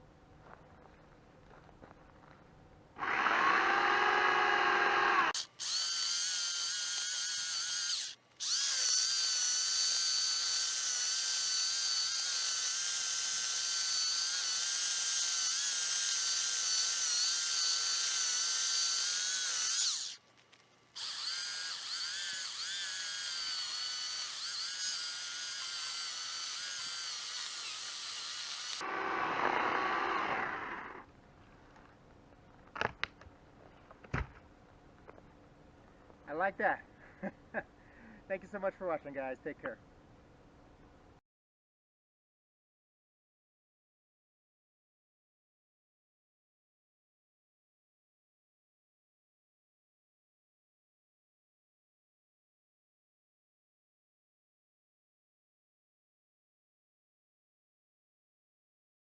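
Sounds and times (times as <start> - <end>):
electric chainsaw cutting wood: 3.0 - 31.1.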